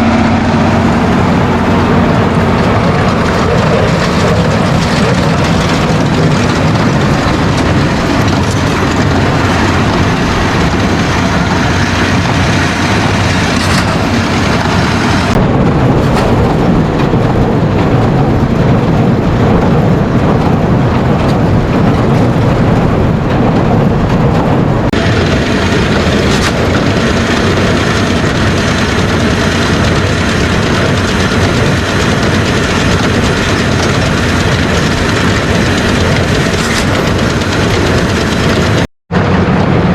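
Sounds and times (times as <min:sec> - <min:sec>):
tractor running under load: 0:00.0 - 0:39.9.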